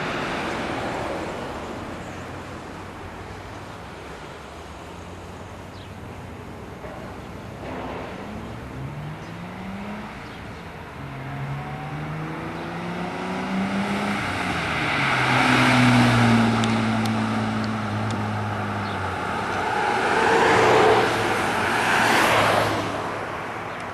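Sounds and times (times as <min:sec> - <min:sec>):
road and tyre noise: 0:00.0 - 0:23.9
car engine accelerating: 0:07.8 - 0:23.0.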